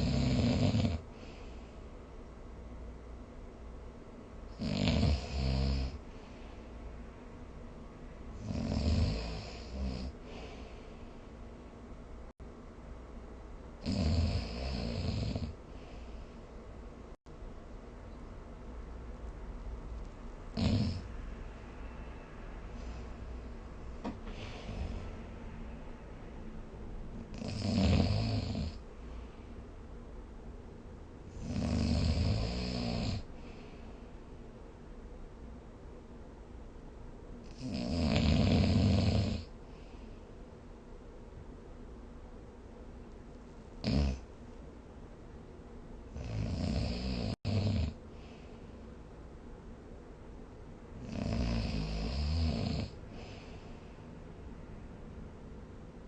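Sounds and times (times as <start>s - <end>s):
rattling snores: 0.0s - 1.0s, 4.6s - 6.0s, 8.4s - 10.2s, 13.8s - 15.6s, 20.5s - 21.1s, 27.3s - 28.8s, 31.4s - 33.3s, 37.5s - 39.5s, 43.8s - 44.2s, 46.2s - 48.0s, 51.0s - 53.0s.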